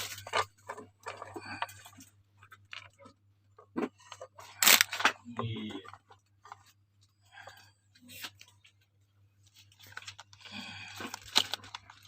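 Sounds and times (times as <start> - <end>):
packaging clicks and rustles: 0.0 - 3.2, 3.9 - 5.2, 9.5 - 12.0.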